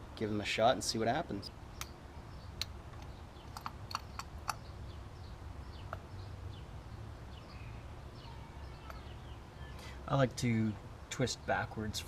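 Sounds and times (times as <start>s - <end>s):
faint bird chirps: 1.4s - 10.0s
small tools clicking: 2.6s - 4.6s.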